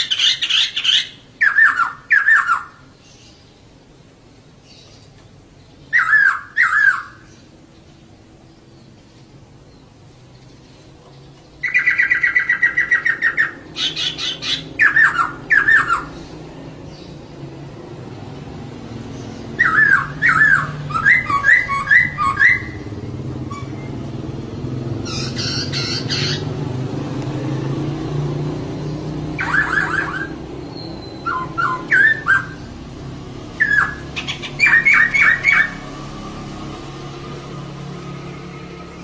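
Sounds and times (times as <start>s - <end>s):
harsh rasping bird call: 0.0s - 3.3s, 5.8s - 7.4s, 11.6s - 16.4s, 19.3s - 23.9s, 25.0s - 26.6s, 29.3s - 32.8s, 33.6s - 35.9s
bird chattering calls: 0.0s - 3.4s, 5.8s - 7.5s, 11.5s - 16.4s, 19.2s - 23.9s, 25.0s - 26.6s, 29.1s - 32.8s, 33.6s - 35.8s.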